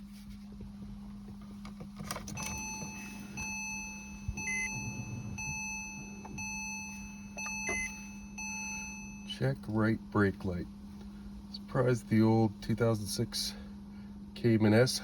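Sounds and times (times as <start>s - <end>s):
low steady hum: 0.0s - 15.0s
car electronic beep tone: 2.4s - 9.4s.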